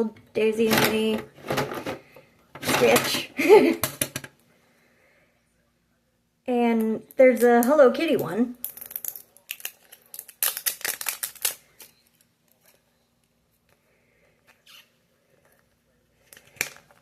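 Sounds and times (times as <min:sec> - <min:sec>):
plastic packaging crinkling: 0:08.6 - 0:12.8
plastic packaging rustle: 0:08.8 - 0:12.8.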